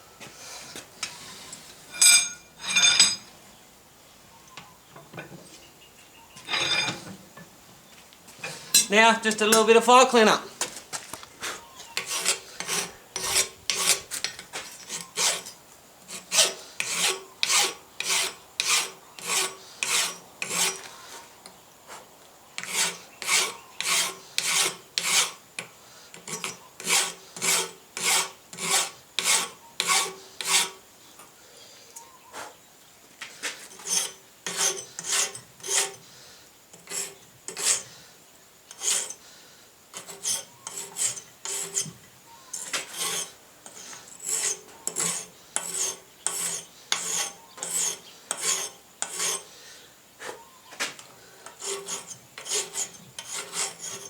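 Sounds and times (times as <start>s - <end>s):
hand file rasping on steel: 11.4s - 21.3s, 22.6s - 30.8s, 33.6s - 36.0s, 36.8s - 37.9s, 38.7s - 39.2s, 39.9s - 42.0s, 42.6s - 49.5s, 51.4s - 54.0s.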